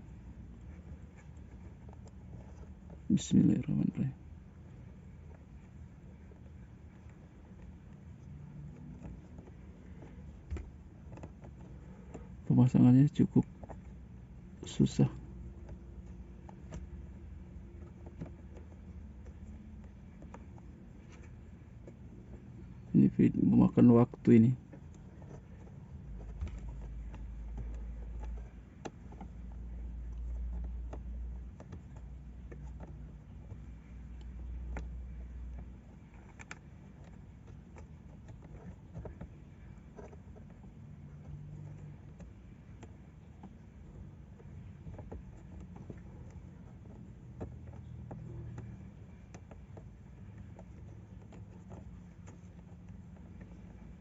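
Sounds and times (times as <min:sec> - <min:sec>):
low rumble of handling noise: 0:00.0 - 0:54.0
low steady hum: 0:00.0 - 0:54.0
small clicks and taps of hands: 0:24.1 - 0:54.0.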